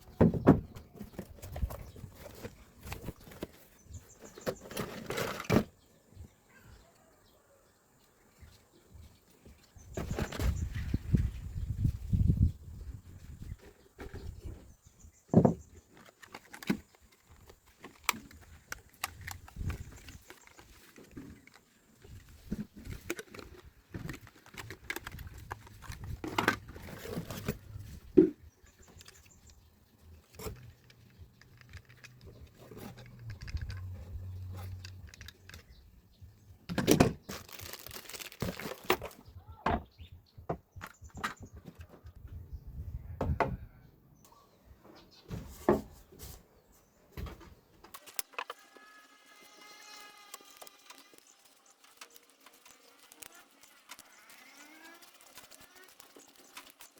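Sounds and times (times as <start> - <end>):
workshop knocks and clicks: 0.1 - 1.8.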